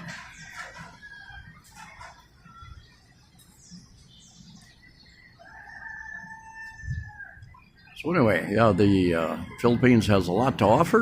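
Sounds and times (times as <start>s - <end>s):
small birds chirping: 0.0s - 11.0s
rooster crowing: 0.3s - 1.7s, 5.3s - 7.5s, 9.0s - 10.6s.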